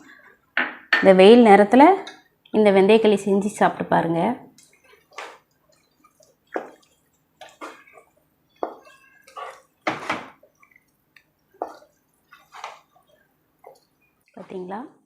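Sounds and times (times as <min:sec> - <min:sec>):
thick dough squelching in pan: 0:04.5 - 0:14.8.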